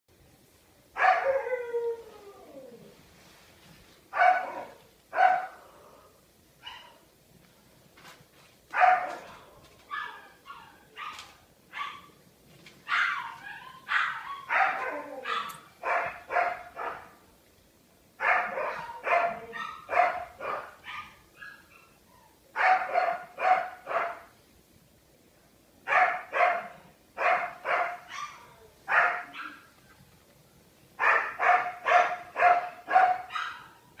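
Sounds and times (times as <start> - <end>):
dog barking: 4.2 - 5.6, 6.6 - 7.0, 8.7 - 12.2, 12.9 - 17.2, 18.2 - 22.0, 22.6 - 24.3, 25.9 - 29.7, 31.0 - 34.0.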